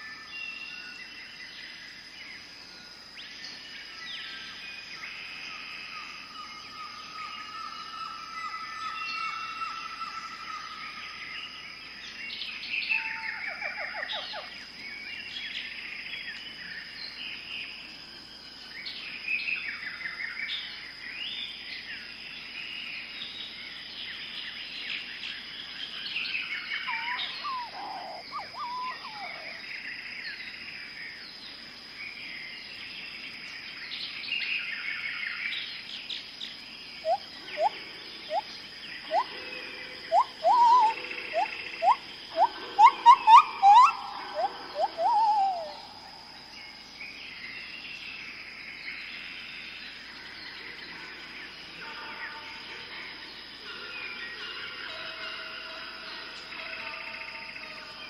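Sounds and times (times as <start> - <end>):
birds chirping and trilling: 0.0 - 58.0.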